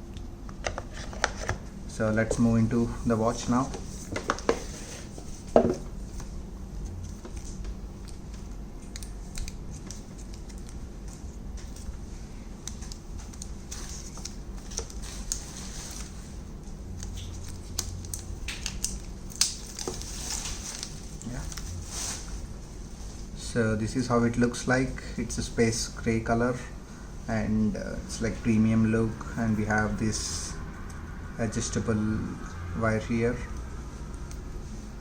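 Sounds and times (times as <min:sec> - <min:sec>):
plastic wrapping rustling: 0:12.7 - 0:16.4, 0:17.0 - 0:22.5.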